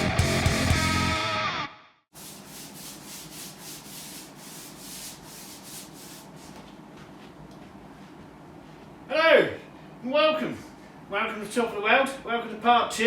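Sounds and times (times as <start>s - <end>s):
scratchy rubbing strokes: 2.2s - 6.7s.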